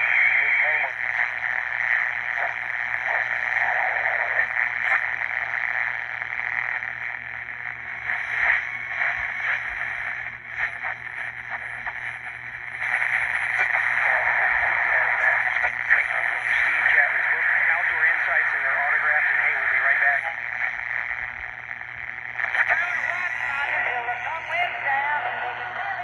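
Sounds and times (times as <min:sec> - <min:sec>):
transistor radio playing: 0:00.0 - 0:26.0.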